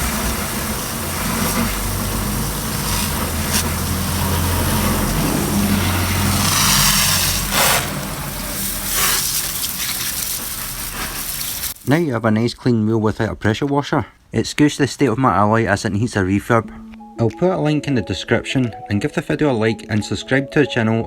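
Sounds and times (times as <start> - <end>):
hose spray rinsing car wheel: 0.0 - 12.0.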